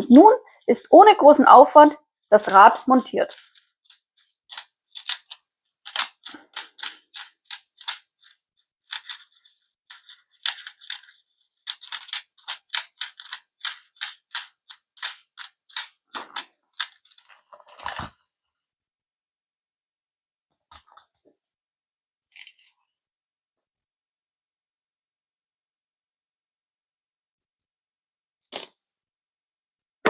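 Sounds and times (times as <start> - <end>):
metal tool clatter: 2.4 - 18.1.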